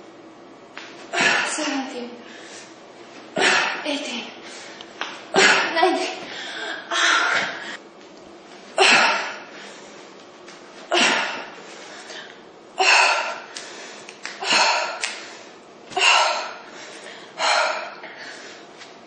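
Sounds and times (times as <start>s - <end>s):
woman breathing hard: 2.2s - 2.8s, 4.4s - 4.9s, 6.2s - 7.8s, 10.9s - 18.8s.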